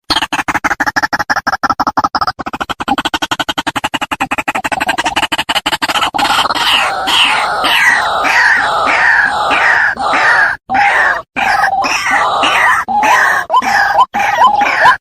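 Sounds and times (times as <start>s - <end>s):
waterhen calls: 6.4s - 15.0s.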